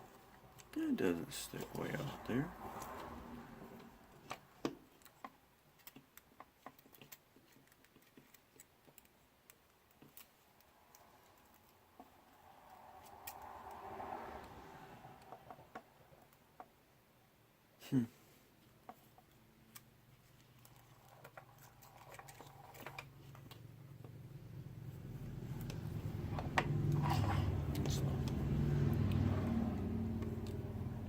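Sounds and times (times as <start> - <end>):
small clicks and taps of tools: 4.2 - 12.1.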